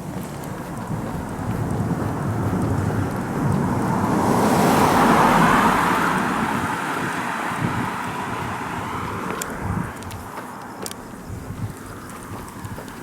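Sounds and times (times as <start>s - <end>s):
car driving past: 0.0s - 10.1s.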